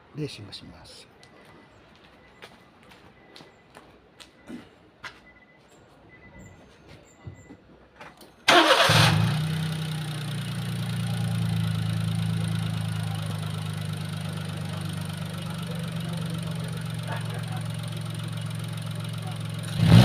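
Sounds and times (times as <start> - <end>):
car engine cranking: 8.5 - 20.0
car engine idling: 8.5 - 20.0.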